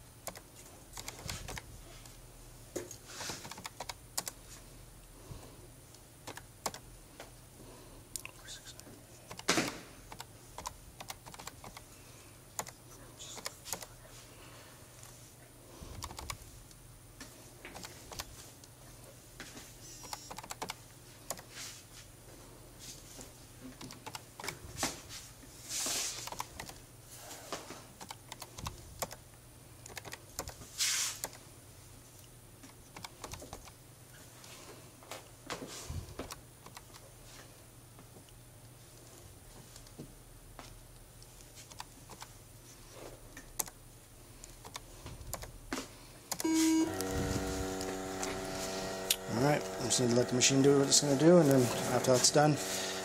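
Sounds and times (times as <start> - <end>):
typing on computer keyboard: 0.2 - 0.4, 1.0 - 1.6, 3.4 - 4.4, 6.2 - 6.8, 9.3 - 9.5, 10.1 - 11.8, 15.9 - 16.4, 17.8 - 18.3, 20.0 - 21.4, 23.8 - 24.5, 26.2 - 26.8, 28.0 - 29.2, 29.9 - 30.6, 32.9 - 33.7, 36.3 - 37.0, 43.6 - 43.8, 44.6 - 45.5
short hissing sounds: 30.8 - 31.3
faint low hum: 31.3 - 53.0.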